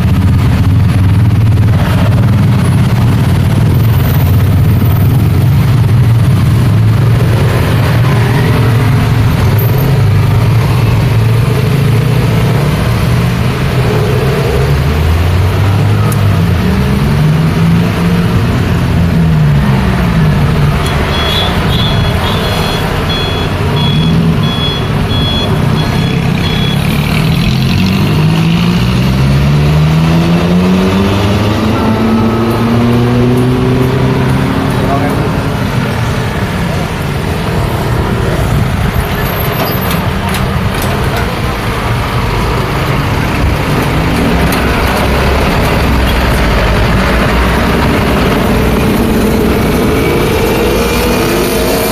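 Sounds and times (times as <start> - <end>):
road traffic passing: 0.0 - 51.9
vehicle engine accelerating: 0.0 - 51.9
short high beeps: 20.9 - 27.0.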